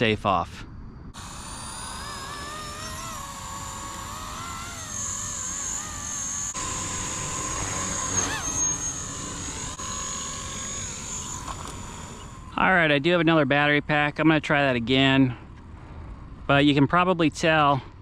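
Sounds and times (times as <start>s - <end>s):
rc helicopter motor and rotor whine: 1.2s - 12.9s.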